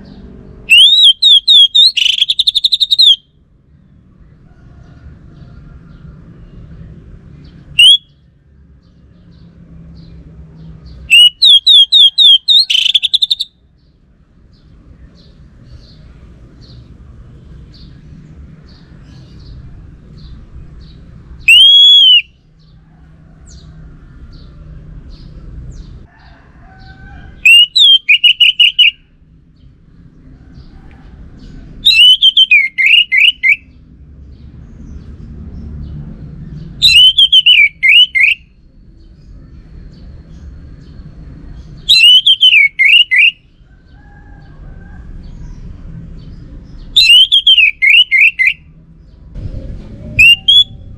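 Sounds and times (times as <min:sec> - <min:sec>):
faint high chirps: 0:00.7 - 0:03.2
thrush singing whistled phrases: 0:00.7 - 0:03.3, 0:07.7 - 0:08.1, 0:11.1 - 0:13.5, 0:21.4 - 0:22.4, 0:27.4 - 0:29.0, 0:31.8 - 0:33.7, 0:36.8 - 0:38.4, 0:41.9 - 0:43.4, 0:47.0 - 0:48.6, 0:50.2 - 0:50.8
low background rumble: 0:48.7 - 0:50.9.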